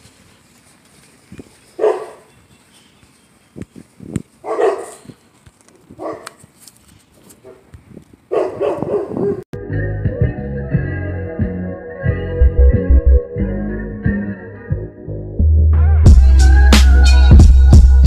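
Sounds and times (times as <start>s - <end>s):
dog barking: 1.8s - 2.3s, 4.4s - 5.1s, 6.0s - 6.4s, 7.4s - 7.7s, 8.3s - 9.4s.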